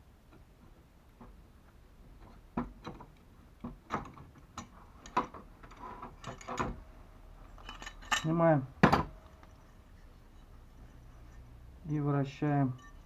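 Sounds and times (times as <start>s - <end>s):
metallic clicks and knocks: 2.2s - 6.8s.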